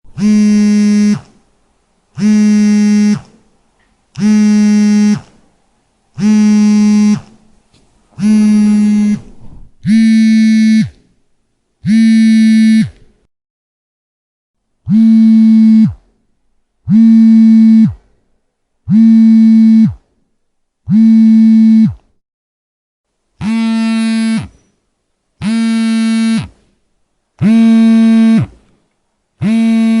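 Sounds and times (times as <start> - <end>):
mobile phone vibrating: 0.1 - 1.4, 2.2 - 3.4, 4.2 - 5.4, 6.2 - 7.4, 8.2 - 11.1, 11.8 - 13.1, 14.9 - 16.2, 16.9 - 18.1, 18.9 - 20.1, 20.9 - 22.0, 23.4 - 24.7, 25.4 - 26.7, 27.4 - 28.7, 29.4 - 30.0.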